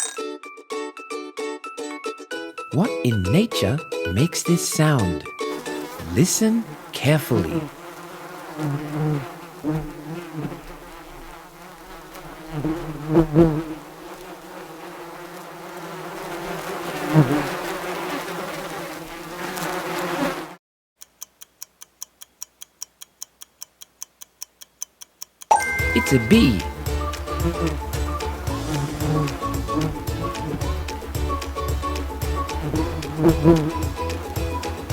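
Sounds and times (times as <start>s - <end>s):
bee buzzing: 4.3s - 20.6s, 25.9s - 34.9s
clock ticking: 21.0s - 26.7s.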